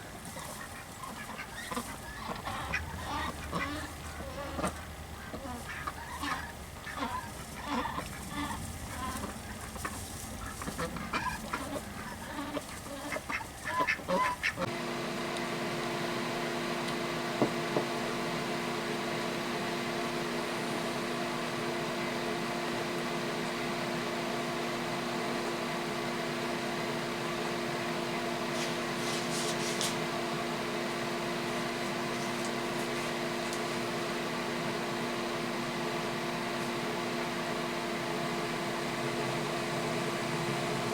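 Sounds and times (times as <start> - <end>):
steady mechanical hum with tones: 0.0 - 40.9
ducks quacking: 0.3 - 14.7.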